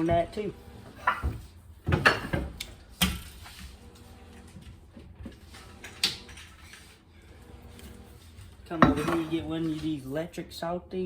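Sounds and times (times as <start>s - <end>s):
kitchen items knocking: 8.7s - 9.7s.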